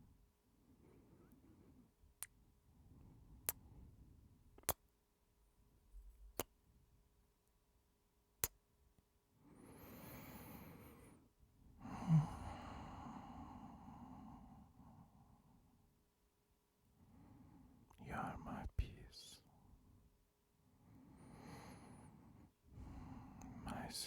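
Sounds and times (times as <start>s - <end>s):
kiss lip smacks: 4.6s - 4.8s, 6.3s - 6.6s
breathy sighs: 9.6s - 11.2s, 11.8s - 14.7s.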